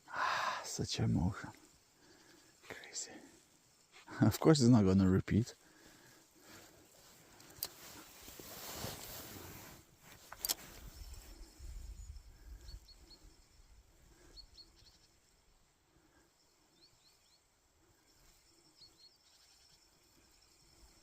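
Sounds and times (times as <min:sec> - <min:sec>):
faint high bird chirps: 0:10.8 - 0:15.6, 0:16.3 - 0:21.0.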